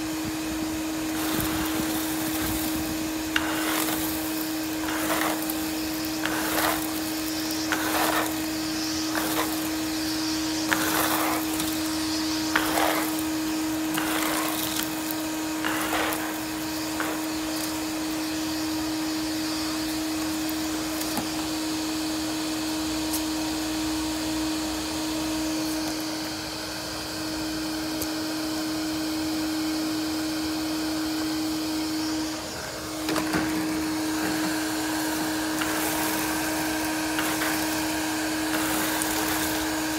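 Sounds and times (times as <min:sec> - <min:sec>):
leaves crackling up a hose: 0:00.0 - 0:21.7, 0:32.9 - 0:39.9
shop vacuum motor whine: 0:00.0 - 0:39.9.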